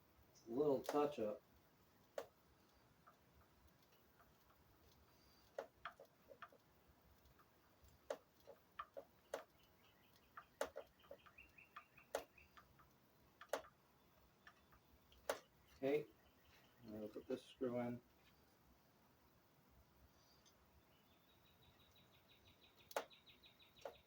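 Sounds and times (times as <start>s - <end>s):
small clicks and taps: 0.8s - 1.2s, 2.0s - 15.8s, 22.8s - 24.0s.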